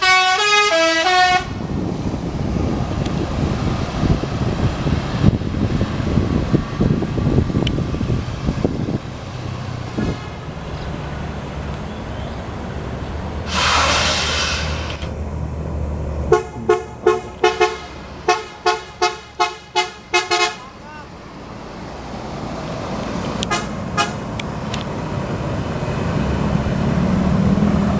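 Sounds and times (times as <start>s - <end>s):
bus horn melody: 0.0s - 1.7s, 13.5s - 15.1s, 16.2s - 21.0s, 23.4s - 24.4s
bus engine running: 0.0s - 27.9s
air hiss: 13.4s - 15.1s.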